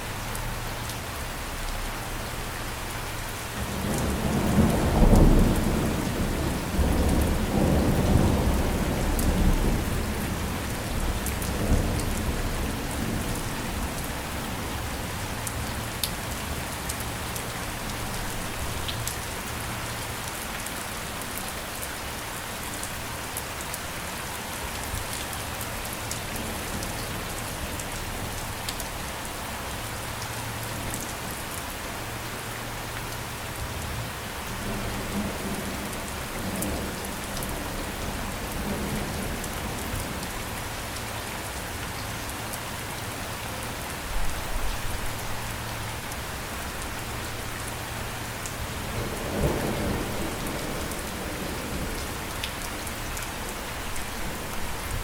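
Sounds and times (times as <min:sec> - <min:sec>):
steady rain falling: 0:00.0 - 0:55.0
thunder rumbling: 0:48.6 - 0:52.5.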